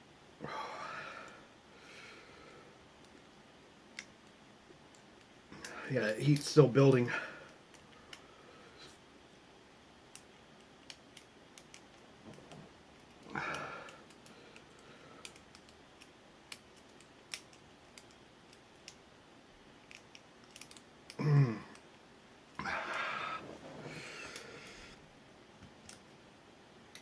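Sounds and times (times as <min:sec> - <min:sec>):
person grunting: 0:21.2 - 0:21.8, 0:22.6 - 0:23.4
breathy sound: 0:22.6 - 0:25.0.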